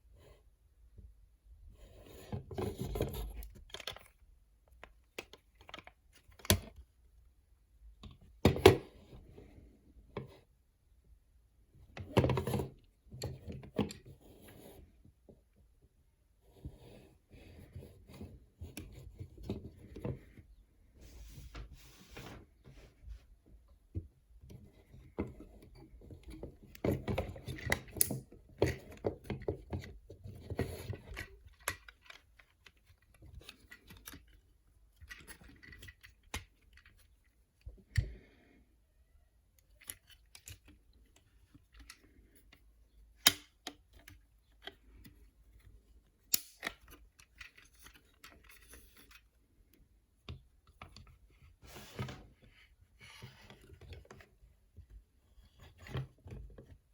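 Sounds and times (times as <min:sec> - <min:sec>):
plastic parts clicking and knocking: 0:02.2 - 0:06.9, 0:23.8 - 0:38.2, 0:39.5 - 0:49.3.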